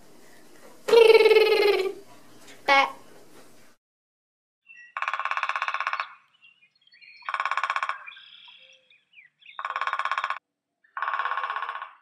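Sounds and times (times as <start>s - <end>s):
woodpecker drumming: 4.8s - 6.3s, 7.2s - 8.6s, 9.4s - 12.0s.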